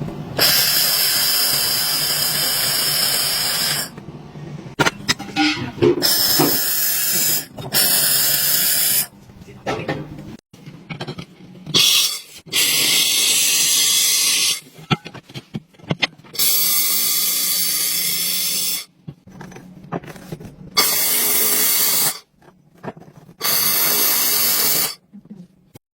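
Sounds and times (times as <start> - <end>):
welding arc hissing and crackling: 0.4 - 3.9, 6.0 - 9.1, 11.8 - 14.6, 16.4 - 18.9, 20.8 - 22.2, 23.4 - 25.0.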